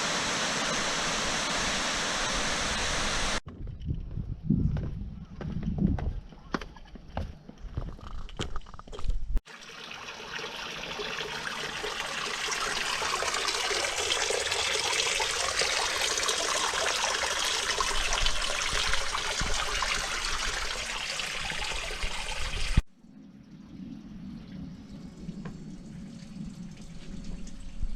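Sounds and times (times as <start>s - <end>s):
running water rushing: 0.0s - 3.4s, 9.5s - 22.8s.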